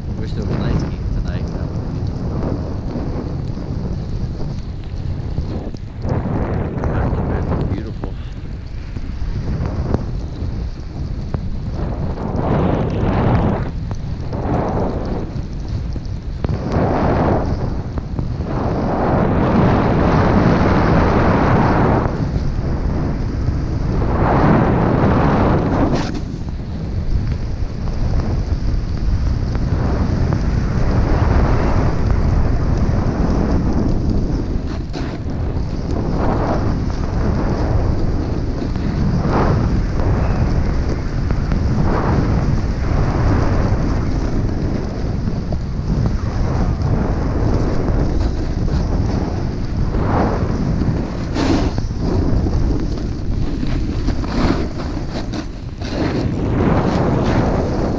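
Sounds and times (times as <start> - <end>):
wind rushing over microphone: 0.0 - 57.9
snowboard hissing through snow: 18.3 - 26.5, 32.9 - 45.2, 45.9 - 57.9.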